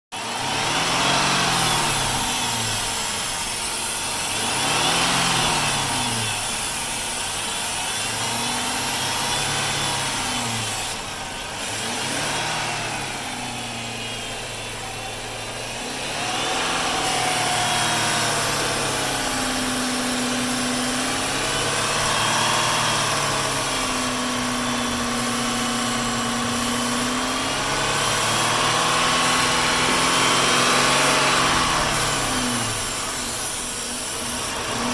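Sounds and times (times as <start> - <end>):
car engine revving in waves: 4.4 - 6.5, 8.1 - 25.0.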